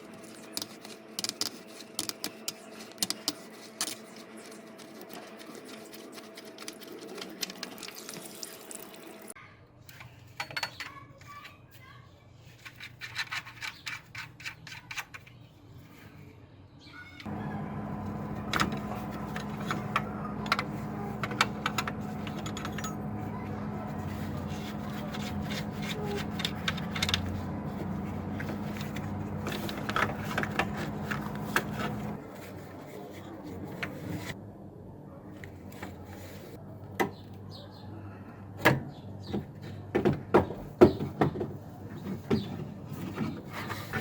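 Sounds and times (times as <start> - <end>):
handling scrapes: 17.7 - 34.4, 42.8 - 44.0.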